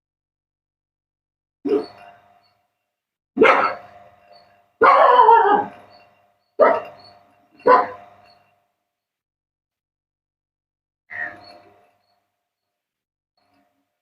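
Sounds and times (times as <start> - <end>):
dog barking: 3.4 - 3.9, 4.8 - 5.8, 6.6 - 7.0, 7.6 - 8.1.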